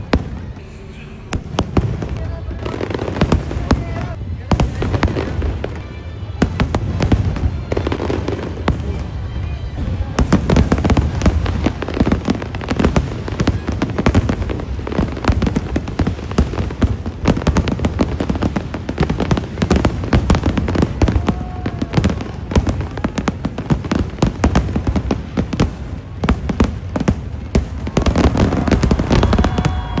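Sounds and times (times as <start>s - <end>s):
deep booms: 0.0s - 5.8s
fireworks bursts and crackling: 0.0s - 30.0s.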